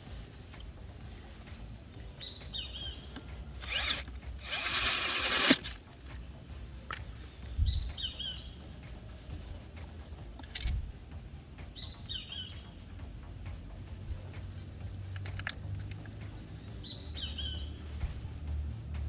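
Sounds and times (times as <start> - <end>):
birds chirping: 0.0 - 5.5, 6.1 - 10.5, 11.5 - 13.2, 15.6 - 18.4
ratchet wrench ratcheting: 3.5 - 6.2, 14.0 - 16.5.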